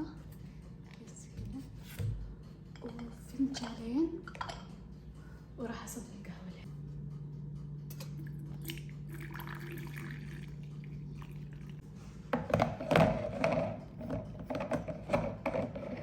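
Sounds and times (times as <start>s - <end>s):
steady low hum: 0.0s - 15.8s
coffee pouring and splashing: 8.6s - 11.8s.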